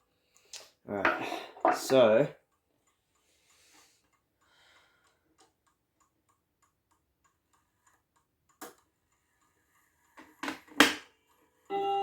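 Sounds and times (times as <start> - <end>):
clock ticking: 1.6 - 10.2.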